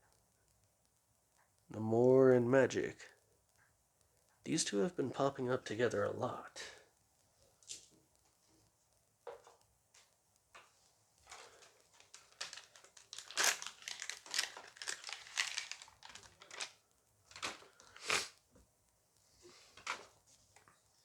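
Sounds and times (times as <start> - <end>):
plastic wrapper tearing and crinkling: 11.3 - 18.4.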